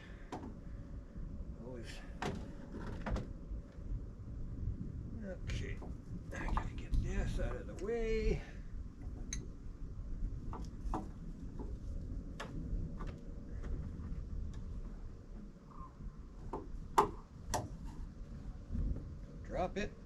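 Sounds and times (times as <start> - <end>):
knocks of wooden framing handled: 2.2 - 3.4, 10.4 - 15.6, 16.4 - 18.1.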